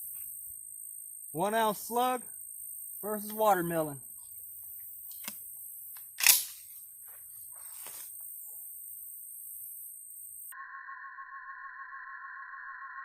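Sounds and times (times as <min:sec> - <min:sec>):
sharp click: 0:06.0 - 0:06.6.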